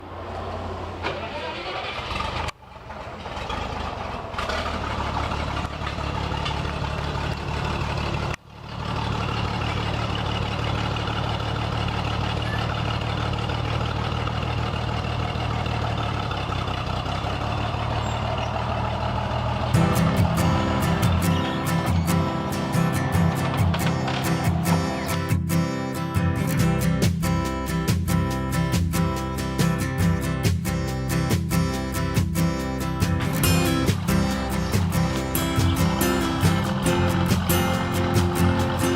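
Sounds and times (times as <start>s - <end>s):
tractor engine running: 0.0s - 38.9s
music: 19.8s - 38.9s.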